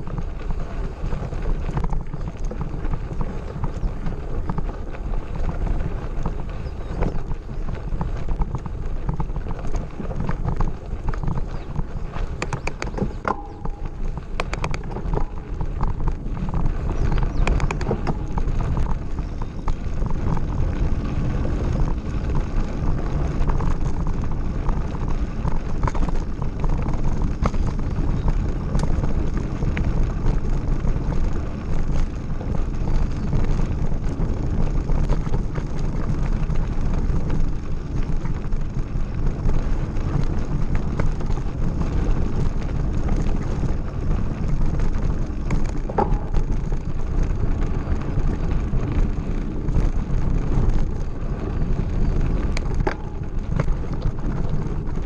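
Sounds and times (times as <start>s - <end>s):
bike tyres rumbling on gravel: 0.0s - 55.0s
rattling clicks of bike and stones: 0.0s - 55.0s
wind on microphone: 0.0s - 55.0s.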